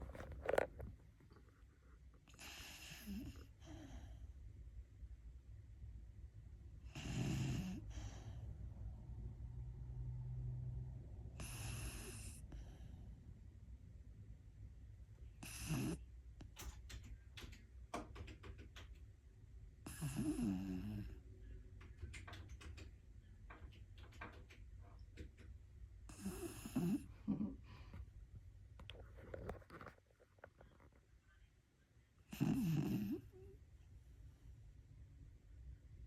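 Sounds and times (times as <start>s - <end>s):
quiet breathing: 1.6s - 4.6s, 6.8s - 9.1s, 11.2s - 13.5s, 26.1s - 29.4s
loud snores: 2.4s - 3.8s, 6.9s - 8.3s, 11.4s - 12.5s, 15.4s - 16.0s, 19.9s - 21.1s, 26.1s - 27.1s, 32.3s - 33.3s.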